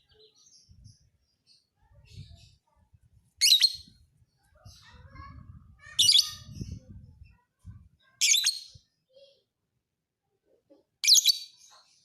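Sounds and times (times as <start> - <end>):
soft bird chirps: 0.0 - 9.4
lovebird shrill calls: 3.4 - 3.8.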